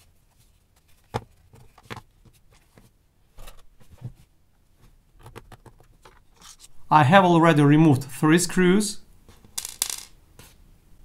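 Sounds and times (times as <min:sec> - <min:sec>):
plastic case being handled: 0:00.3 - 0:06.7.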